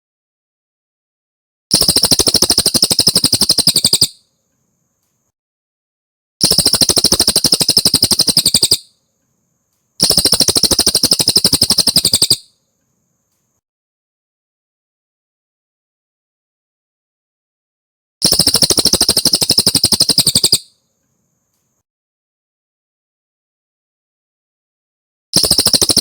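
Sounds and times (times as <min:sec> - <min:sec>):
bird trilling chip notes: 0:01.7 - 0:04.2, 0:06.4 - 0:08.9, 0:10.0 - 0:12.5, 0:18.3 - 0:20.6.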